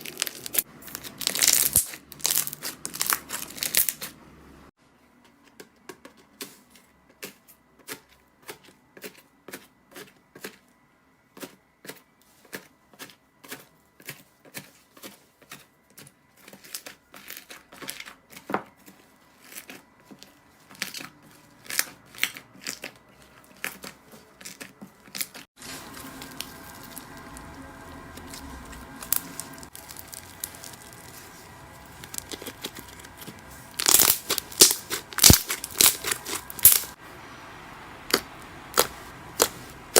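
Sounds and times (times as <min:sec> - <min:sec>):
slime clicking and popping: 0:33.8 - 0:36.9, 0:38.1 - 0:39.6.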